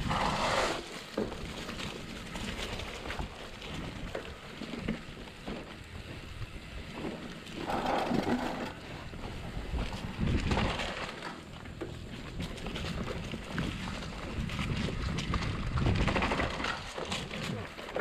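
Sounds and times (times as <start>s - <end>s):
mountain bike rattling: 0.0s - 18.0s
wind buffeting microphone: 1.3s - 11.2s, 11.9s - 18.0s.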